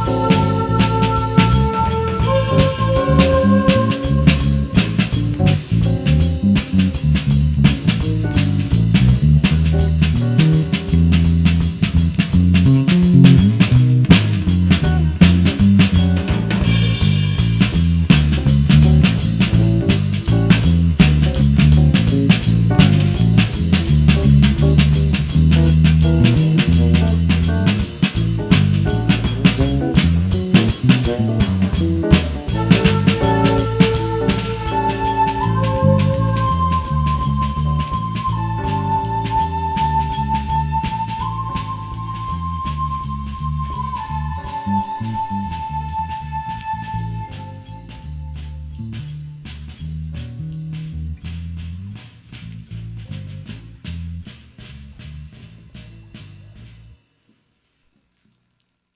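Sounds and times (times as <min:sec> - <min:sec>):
drum kit hits: 0:00.0 - 0:45.8
bass guitar line: 0:00.0 - 0:57.0.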